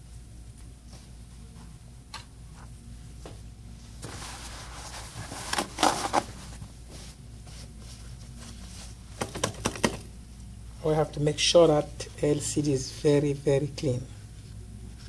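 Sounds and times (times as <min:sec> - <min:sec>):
low steady hum: 0:00.0 - 0:15.0
cloth rubbing on phone screen: 0:03.9 - 0:09.1.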